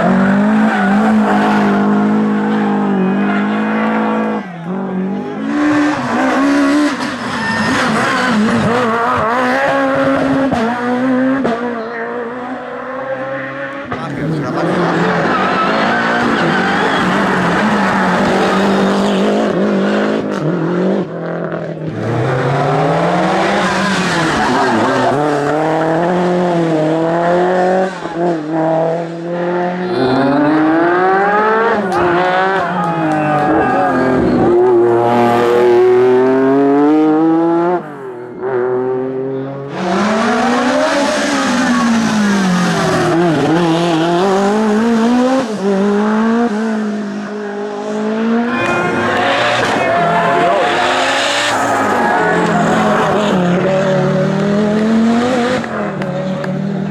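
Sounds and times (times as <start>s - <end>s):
rally car engines revving: 0.0s - 56.9s
tyre squeal: 6.9s - 8.4s, 14.9s - 18.4s.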